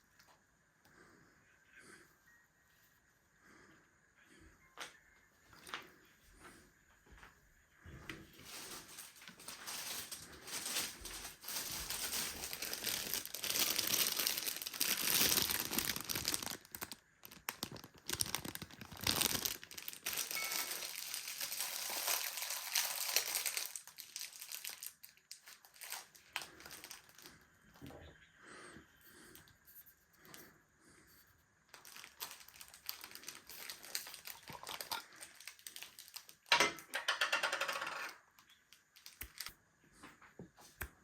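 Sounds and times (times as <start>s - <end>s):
packaging crinkling: 8.4s - 27.5s, 31.7s - 39.6s.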